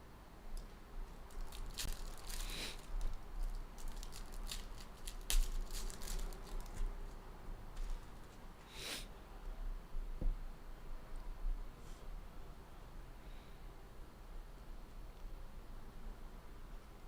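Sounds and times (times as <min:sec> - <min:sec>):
card wrappers tearing and crinkling: 0:01.3 - 0:06.9.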